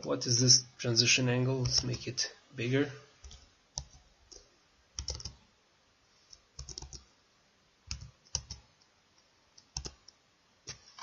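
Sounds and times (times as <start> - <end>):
computer keyboard clicks: 5.0 - 5.4, 6.6 - 7.0, 7.9 - 8.6, 9.6 - 10.8.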